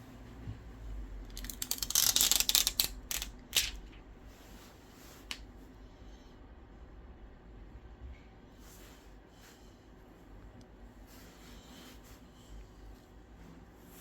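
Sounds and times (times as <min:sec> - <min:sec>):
small sharp clicks and crackle: 0:01.3 - 0:03.9.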